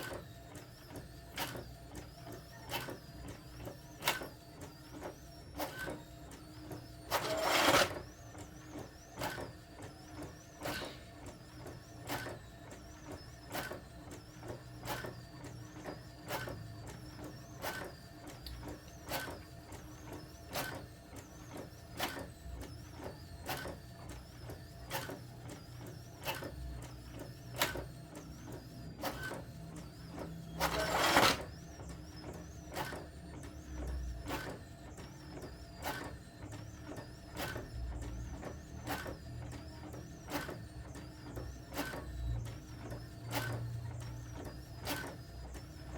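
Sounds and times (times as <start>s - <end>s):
bursts of printer noise: 0.0s - 45.9s
printer low hum: 0.0s - 45.9s
printer clicking: 7.1s - 8.0s, 30.6s - 31.5s.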